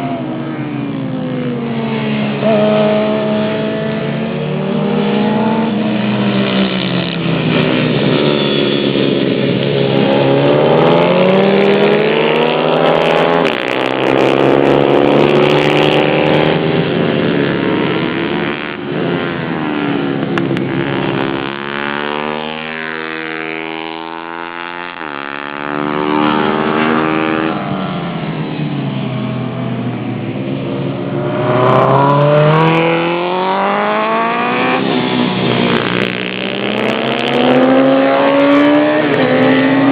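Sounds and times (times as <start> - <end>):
motorbike engines revving hard: 0.0 - 28.6, 29.2 - 39.9.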